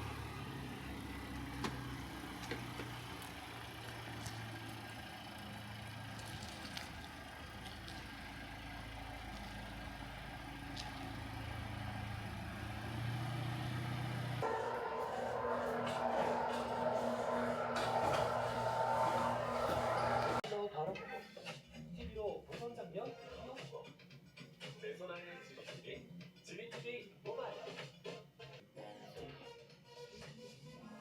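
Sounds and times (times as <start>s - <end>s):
car engine running: 0.0s - 20.4s
music: 14.4s - 31.0s.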